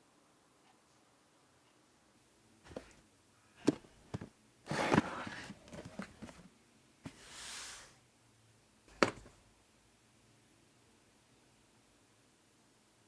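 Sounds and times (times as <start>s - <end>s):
rustling clatter: 2.7s - 3.0s, 3.7s - 6.5s
soft hiss: 7.1s - 8.1s.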